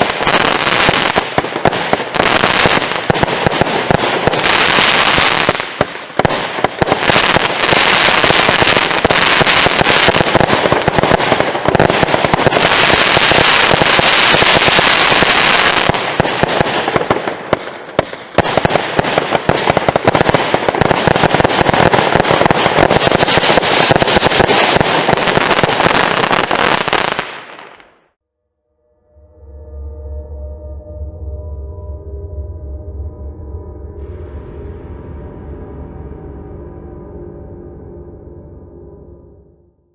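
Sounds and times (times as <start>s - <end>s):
firework crackling bursts: 0.0s - 28.0s.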